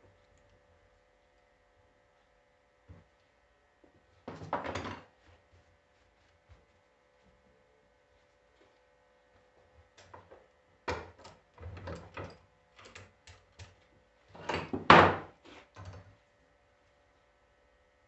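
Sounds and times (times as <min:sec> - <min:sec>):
knocks and clatter of metal parts: 0:04.3 - 0:05.1.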